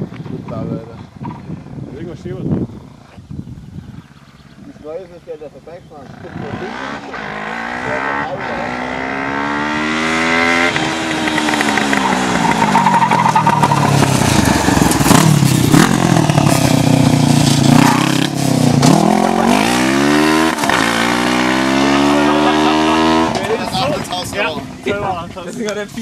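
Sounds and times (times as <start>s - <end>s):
motorcycle engine revving: 6.0s - 24.9s.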